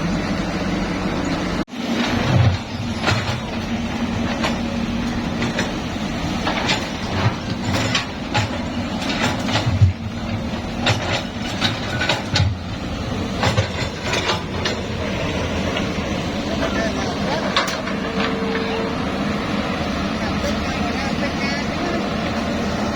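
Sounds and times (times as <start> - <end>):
construction machine engine hum: 0.0 - 22.9
metallic clanks and knocks: 1.8 - 18.9.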